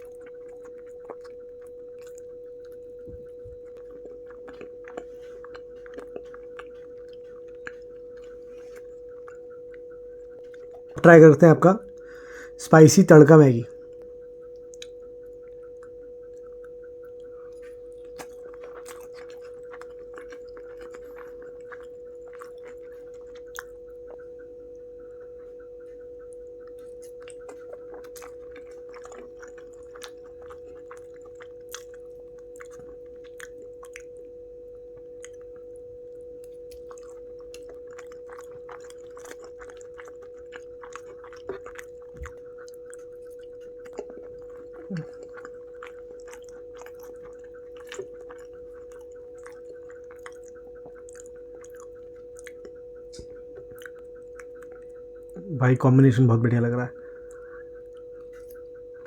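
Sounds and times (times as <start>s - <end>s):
chewing noodles close up: 0.0s - 12.6s, 13.8s - 55.9s, 56.7s - 59.0s
steady pitched hum: 0.0s - 59.0s.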